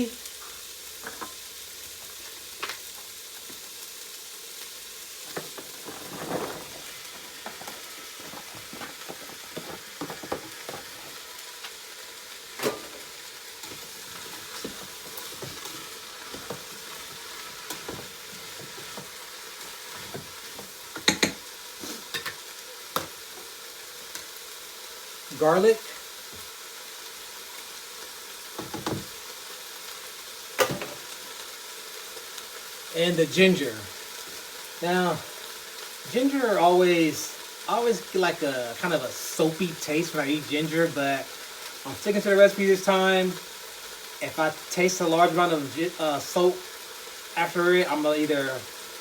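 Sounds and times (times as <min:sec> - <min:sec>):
vegetables sizzling in hot oil: 0:00.0 - 0:49.0
spoon knocking against pot: 0:21.0 - 0:21.4.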